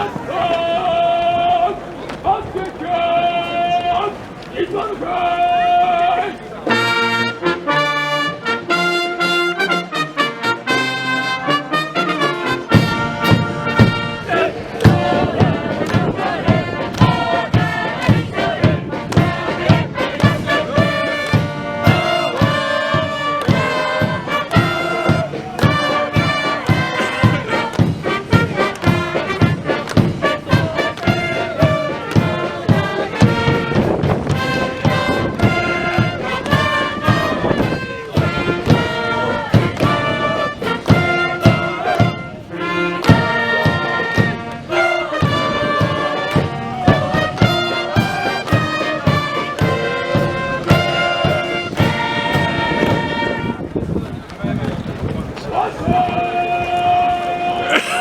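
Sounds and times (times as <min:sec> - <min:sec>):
brass band playing: 0:06.0 - 0:54.0
steady drum beat: 0:12.6 - 0:53.5.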